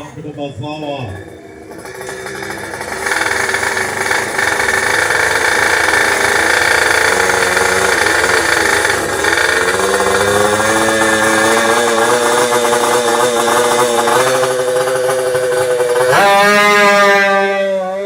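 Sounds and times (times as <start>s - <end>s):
motorbike engines revving: 0.0s - 18.0s.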